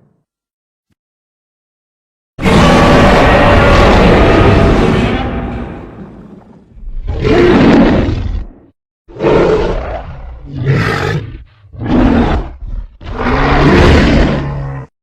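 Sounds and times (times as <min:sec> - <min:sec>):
deep rough monster roars: 0:02.4 - 0:14.9.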